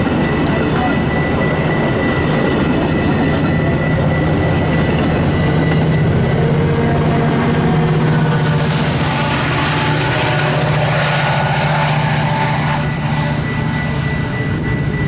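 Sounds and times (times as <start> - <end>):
diesel train engine drone: 0.0 - 15.0
train rolling on rails: 0.0 - 15.0
thin high tone: 8.0 - 15.0.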